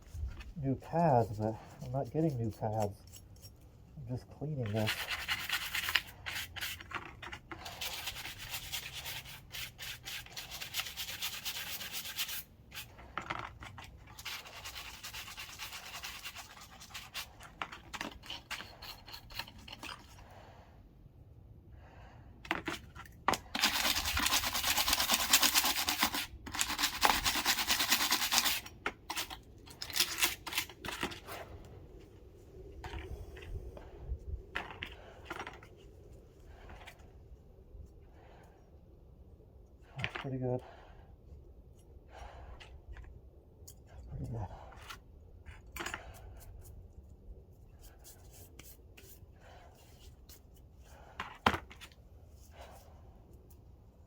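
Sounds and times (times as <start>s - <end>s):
brake parts being scrubbed: 0.2s - 20.3s, 22.8s - 31.5s.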